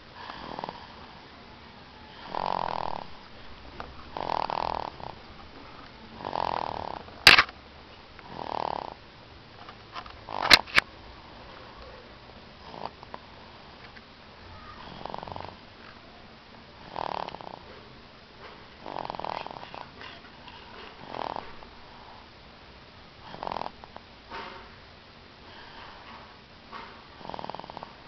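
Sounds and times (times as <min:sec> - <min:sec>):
person snoring: 0:02.1 - 0:03.1, 0:04.2 - 0:05.2, 0:06.2 - 0:07.0.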